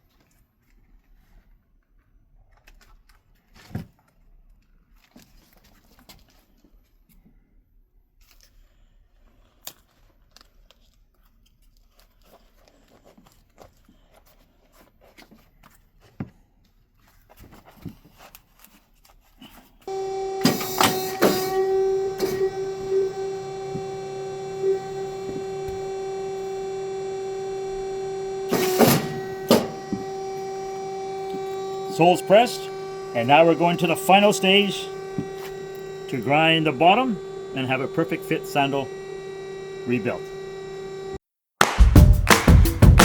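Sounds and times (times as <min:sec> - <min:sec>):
machine humming: 0:19.9 - 0:41.2, 0:41.8 - 0:43.0
sharp clacks: 0:41.6 - 0:43.0.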